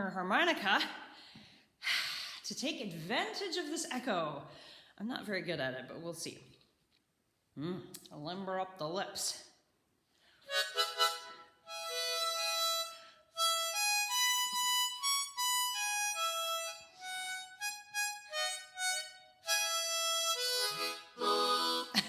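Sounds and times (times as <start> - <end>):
harmonica played solo: 10.4 - 22.0.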